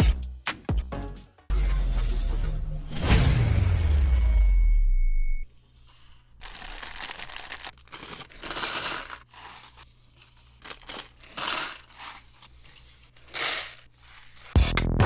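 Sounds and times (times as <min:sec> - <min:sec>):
plastic packaging crinkling and tearing: 0:06.4 - 0:09.8.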